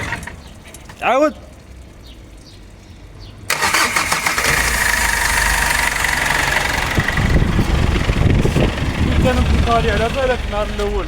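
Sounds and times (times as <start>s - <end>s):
engine starter cranking: 3.5s - 8.4s
engine idling: 3.5s - 11.0s.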